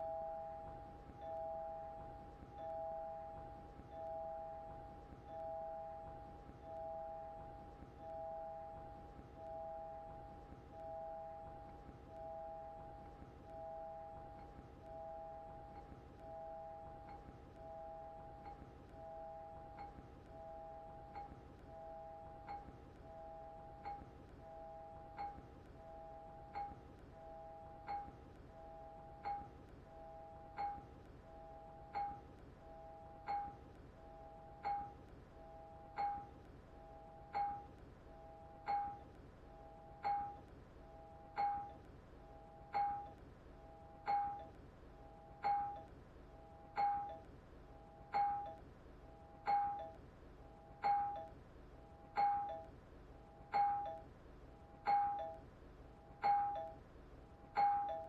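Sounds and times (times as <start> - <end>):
ding-dong doorbell chime: 0.0 - 10.2, 10.8 - 28.1, 28.8 - 30.9, 32.8 - 33.6, 35.6 - 36.3, 37.0 - 37.7, 38.4 - 39.1, 39.7 - 41.8, 42.5 - 43.2, 43.8 - 44.6, 45.2 - 45.9, 46.6 - 47.3, 48.0 - 48.6, 49.4 - 50.0, 50.8 - 51.4, 52.1 - 52.7, 53.5 - 54.2, 54.8 - 55.5, 56.2 - 56.9, 57.5 - 58.0.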